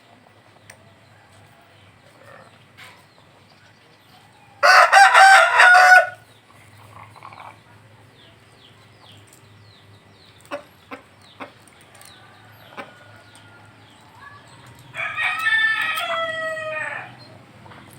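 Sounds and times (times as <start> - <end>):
rooster crowing: 4.6 - 6.2, 14.9 - 17.2.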